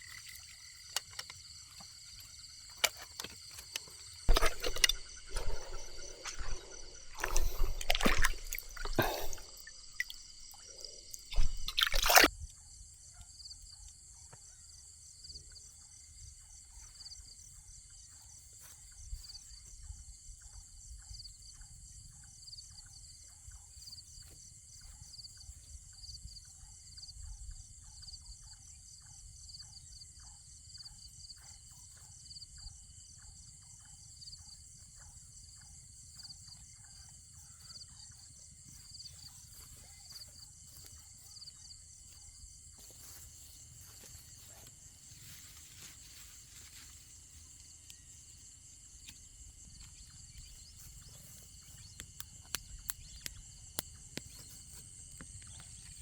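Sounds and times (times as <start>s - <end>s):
insects chirping: 0.0s - 56.0s.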